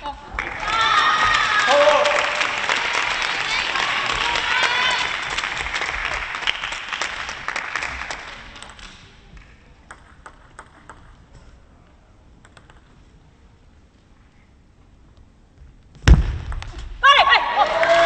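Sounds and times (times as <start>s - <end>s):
spectators applauding: 0.3s - 9.0s, 17.5s - 18.0s.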